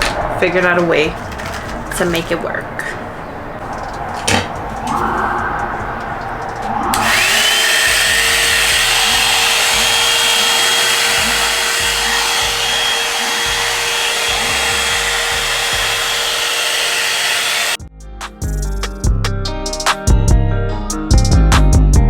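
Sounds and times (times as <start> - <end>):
hot-air dryer brush whirring: 6.9 - 17.8.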